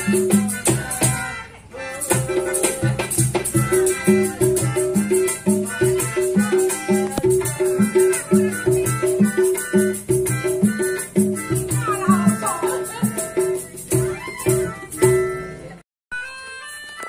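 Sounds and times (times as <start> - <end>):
melodica melody: 0.0 - 17.0
shaker rattling: 2.0 - 15.2
plucked bass line: 2.1 - 15.8.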